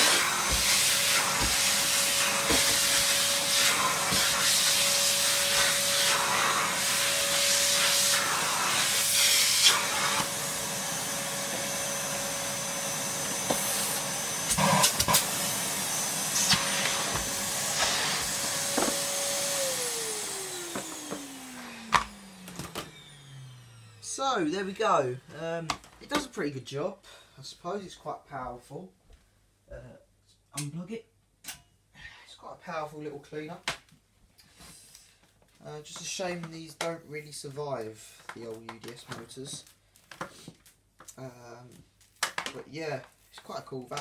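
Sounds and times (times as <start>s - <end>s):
vacuum cleaner motor whine: 0.0s - 24.8s.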